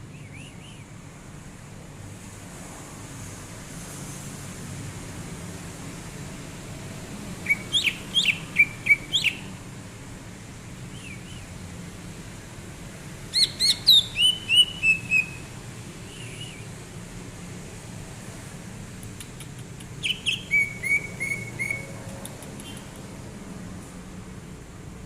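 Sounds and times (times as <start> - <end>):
bird singing whistled notes: 0.1 - 0.9, 7.4 - 9.5, 10.9 - 11.5, 13.3 - 16.8, 20.0 - 21.9.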